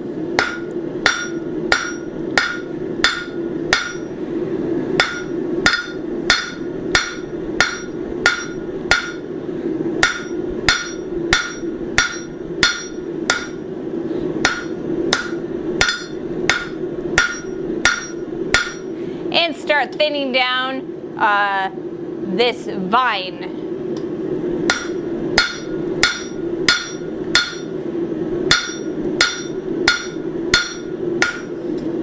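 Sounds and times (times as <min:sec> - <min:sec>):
steady low hum: 0:00.0 - 0:32.0
hammer striking steel on anvil: 0:00.4 - 0:04.1, 0:05.0 - 0:09.3, 0:10.0 - 0:13.6, 0:14.4 - 0:18.9, 0:24.7 - 0:27.7, 0:28.5 - 0:31.6.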